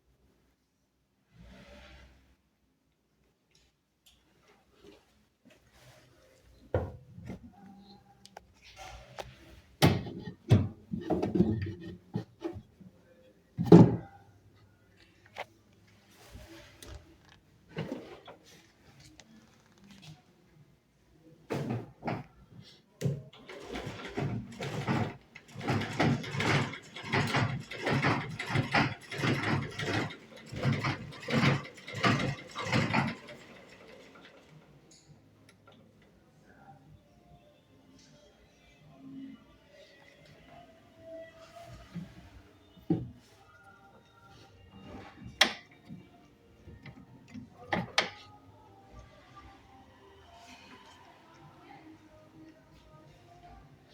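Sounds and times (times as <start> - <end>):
wooden knocks and clunks: 6.7 - 7.5, 9.8 - 12.7
sewing machine clattering: 23.3 - 34.8.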